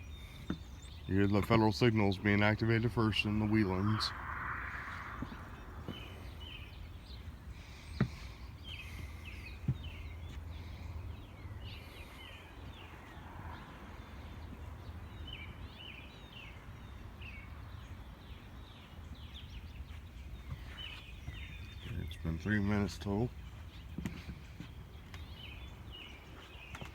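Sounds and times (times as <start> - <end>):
small birds chirping: 0.0 - 26.9
steady low rumble: 1.8 - 11.2.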